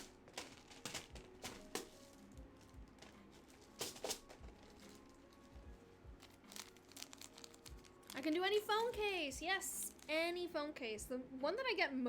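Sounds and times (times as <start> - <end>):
small objects tapping and clicking: 0.0 - 9.1, 9.7 - 10.2.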